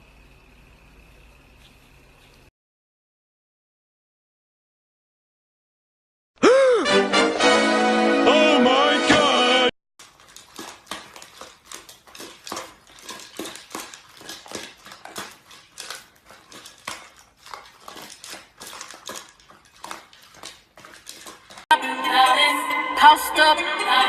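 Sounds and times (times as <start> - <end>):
rapid small clicks and clatters: 10.0 - 21.7.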